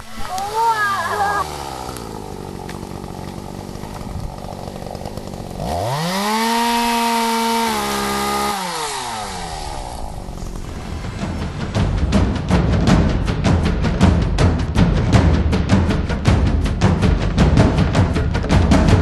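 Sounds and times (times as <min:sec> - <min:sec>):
chainsaw idling and revving: 0:00.5 - 0:13.3.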